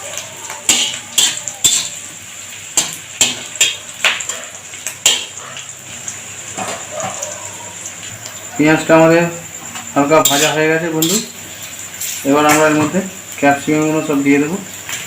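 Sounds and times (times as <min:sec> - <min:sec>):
faint sizzle: 0:00.0 - 0:15.0.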